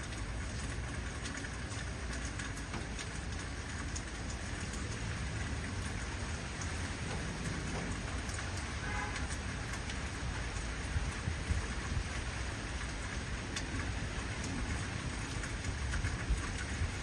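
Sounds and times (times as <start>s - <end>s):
heavy rain falling: 0.0s - 17.0s.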